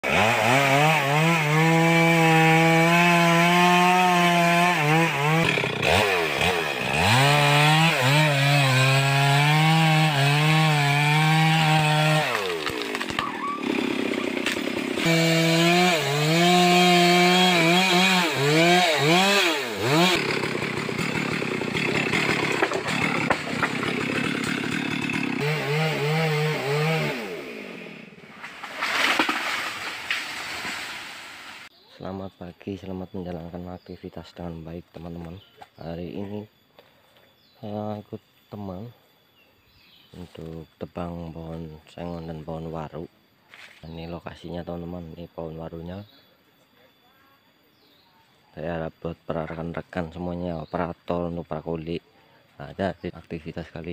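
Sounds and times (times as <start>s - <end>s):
chainsaw cutting wood: 0.0s - 31.7s.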